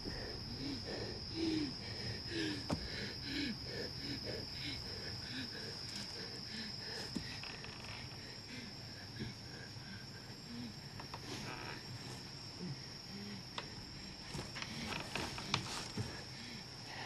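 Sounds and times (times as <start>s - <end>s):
high-pitched cricket drone: 0.0s - 17.0s.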